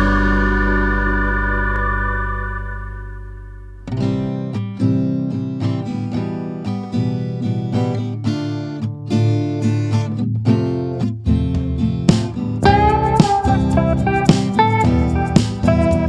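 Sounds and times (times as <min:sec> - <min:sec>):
organ chord: 0:00.0 - 0:04.0
acoustic guitar strummed and plucked: 0:00.0 - 0:16.0.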